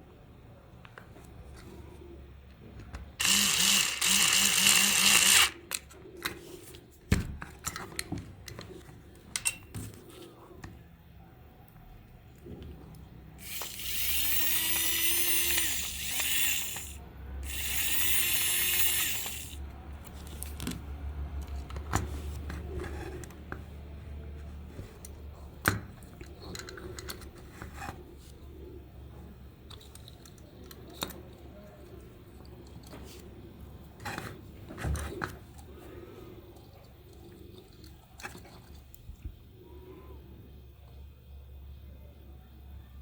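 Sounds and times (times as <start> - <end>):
rotary power tool whining: 3.2 - 5.6, 13.4 - 19.6
clicks and knocks of handling: 5.7 - 10.8, 24.4 - 28.0, 29.6 - 33.3, 36.5 - 39.4.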